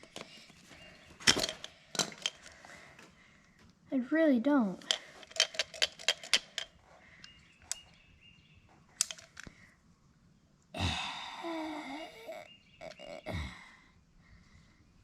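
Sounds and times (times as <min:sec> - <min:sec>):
metallic clicks of hand tools: 0:04.8 - 0:07.9, 0:09.0 - 0:09.5
person exhaling loudly: 0:10.8 - 0:13.9.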